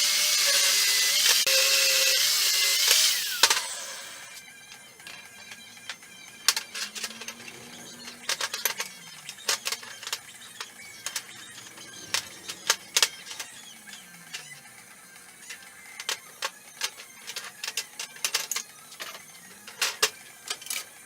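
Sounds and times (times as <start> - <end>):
metal parts clinking: 5.1 - 14.6, 15.4 - 21.0.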